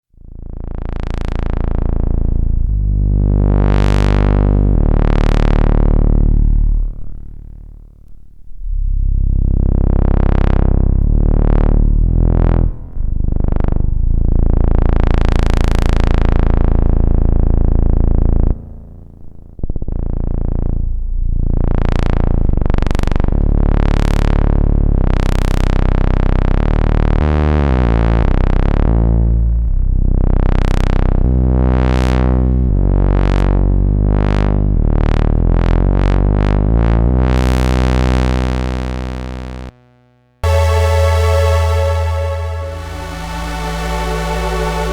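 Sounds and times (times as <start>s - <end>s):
synthesizer bass notes with filter sweeps: 40.4s - 44.9s.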